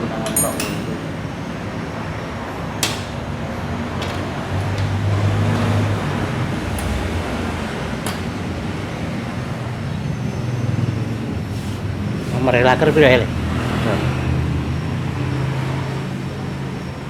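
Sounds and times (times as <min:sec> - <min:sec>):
vehicle traffic hum: 0:00.0 - 0:17.0.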